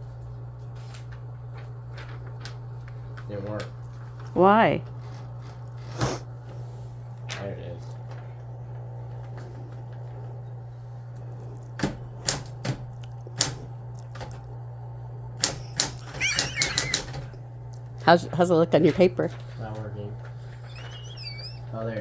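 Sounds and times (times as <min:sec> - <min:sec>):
typewriter keys clacking: 0:15.4 - 0:17.2.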